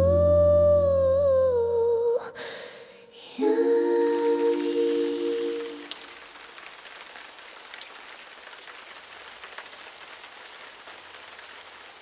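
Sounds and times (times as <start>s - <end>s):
steady rain falling: 3.4s - 12.0s.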